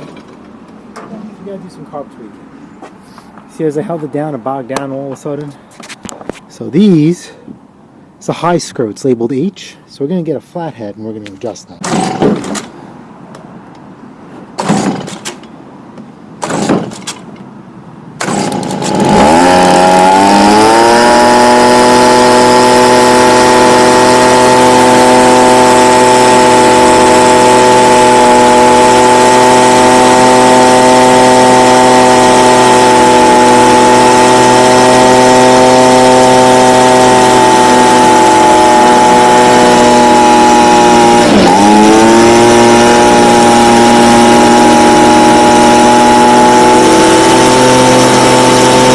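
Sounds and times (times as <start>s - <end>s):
recoil starter pulls: 11.8s - 12.8s, 16.4s - 17.4s, 18.2s - 48.9s
blower engine high-pitched drone: 18.7s - 48.9s.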